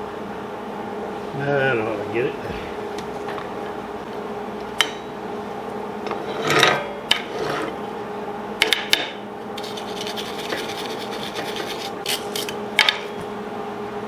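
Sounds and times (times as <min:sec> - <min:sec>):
steady hum: 0:00.0 - 0:14.0
metal scraping on steel: 0:06.2 - 0:07.7
fine scratching: 0:09.6 - 0:12.6.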